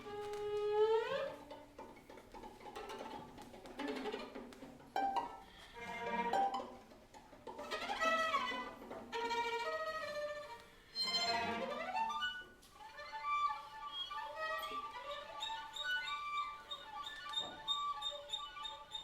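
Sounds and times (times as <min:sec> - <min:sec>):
string quartet playing: 0:05.0 - 0:06.9, 0:07.5 - 0:19.0.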